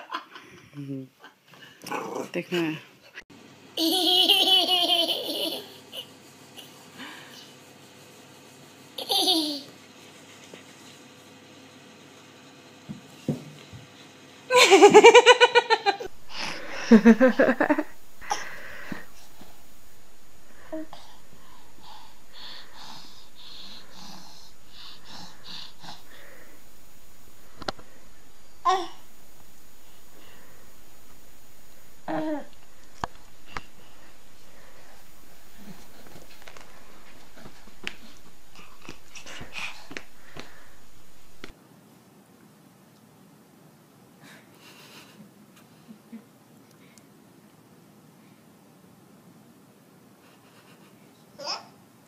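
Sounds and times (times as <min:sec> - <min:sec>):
baby wheezy laughter: 0:03.8 - 0:06.8, 0:09.0 - 0:09.7
small child giggling: 0:03.8 - 0:06.8, 0:09.0 - 0:09.7, 0:14.5 - 0:19.1.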